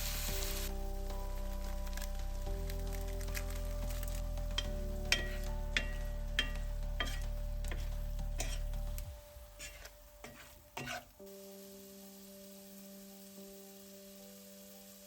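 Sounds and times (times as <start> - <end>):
faint sizzle: 0.0 - 15.0
utensil knocking frying pan: 4.6 - 8.8.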